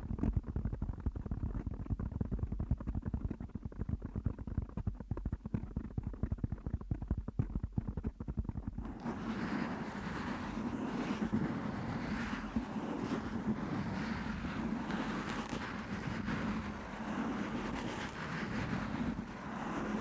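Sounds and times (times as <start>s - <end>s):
microphone being scratched: 8.8s - 20.0s.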